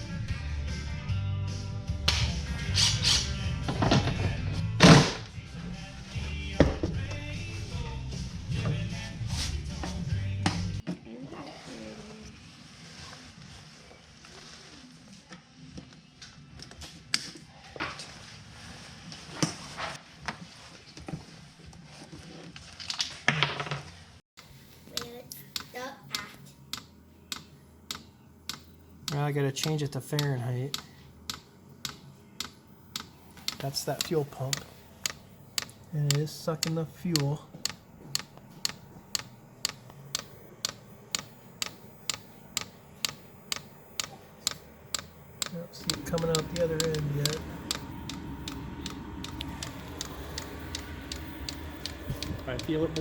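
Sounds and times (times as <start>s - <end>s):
fuel pump clicking: 26.7s - 53.0s
low hum: 30.7s - 53.0s.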